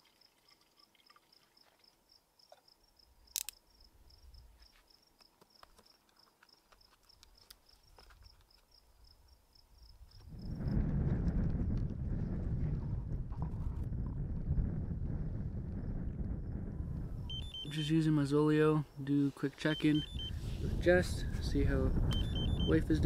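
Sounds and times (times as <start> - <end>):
cricket chirping: 0.0 - 10.8, 17.2 - 20.4, 21.9 - 22.8
sharp click: 3.3 - 3.6.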